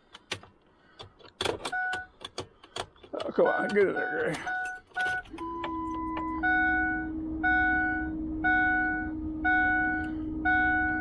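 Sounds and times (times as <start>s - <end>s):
dashboard warning chime: 3.4s - 11.0s.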